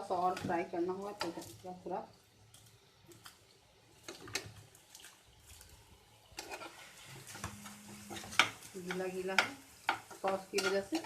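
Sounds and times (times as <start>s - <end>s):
faint sizzling in a frying pan: 0.0s - 11.0s
spatula scraping a frying pan: 6.4s - 11.0s.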